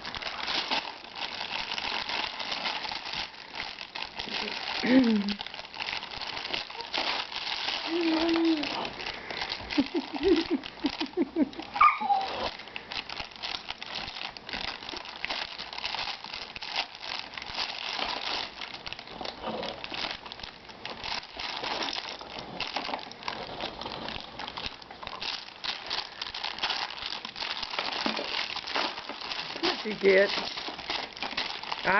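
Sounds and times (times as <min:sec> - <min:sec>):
plastic package crinkling: 0:00.0 - 0:31.9
baby squealing: 0:11.8 - 0:12.5.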